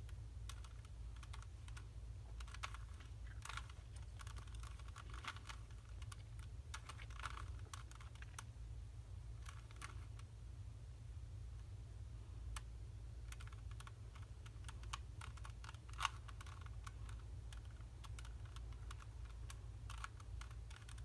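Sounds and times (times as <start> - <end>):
steady low hum: 0.0 - 21.0
plastic cube clicking: 0.4 - 8.5, 12.5 - 21.0.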